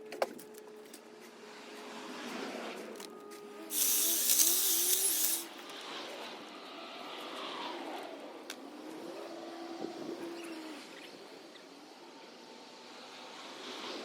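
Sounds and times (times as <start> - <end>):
hedge trimmer motor running: 3.7 - 5.5
loud hissing burst: 3.7 - 5.5.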